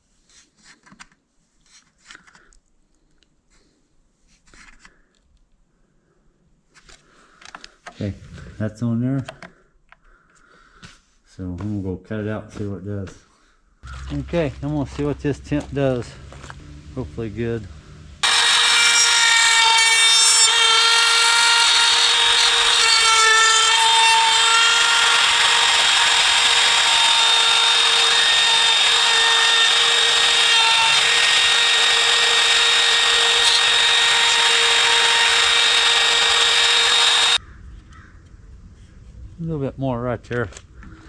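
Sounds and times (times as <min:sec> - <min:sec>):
electric router whining: 0:13.8 - 0:37.4.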